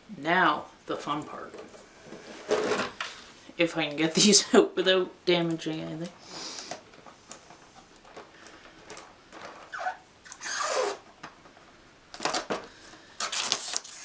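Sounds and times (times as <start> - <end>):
rustling scrape of packaging: 13.2 - 14.0.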